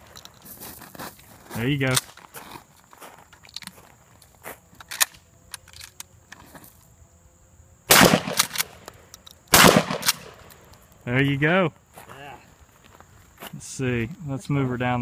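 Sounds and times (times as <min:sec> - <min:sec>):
shotgun blasts with ringing tail: 0:07.9 - 0:08.5, 0:09.6 - 0:10.4.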